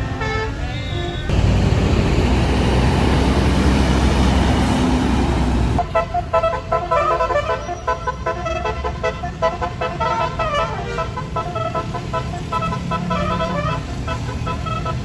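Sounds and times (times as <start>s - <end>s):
multi-tone horn melody: 0.0s - 1.3s, 5.8s - 15.0s
bus engine rumble: 0.0s - 15.0s
bus rushing noise: 1.2s - 15.0s.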